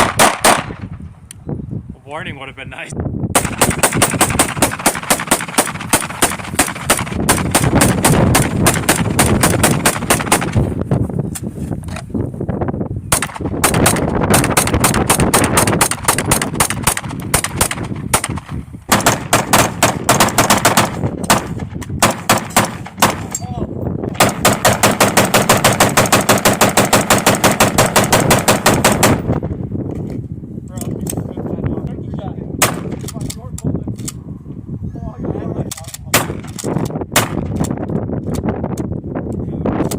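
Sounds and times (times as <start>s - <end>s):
rapid gunfire: 0.0s - 0.8s, 3.3s - 10.7s, 13.1s - 23.3s, 24.2s - 29.3s, 32.6s - 33.0s, 37.2s - 37.5s.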